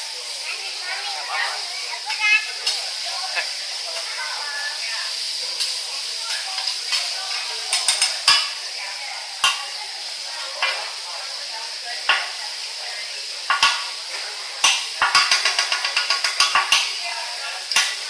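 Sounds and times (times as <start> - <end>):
food sizzling on a griddle: 0.0 - 18.0
metal spatulas clacking on griddle: 5.6 - 8.6, 9.4 - 9.8, 10.6 - 10.9, 12.1 - 12.4, 13.5 - 18.0
rapid spatula taps: 6.3 - 8.6, 9.4 - 9.8, 12.1 - 12.4, 13.5 - 18.0.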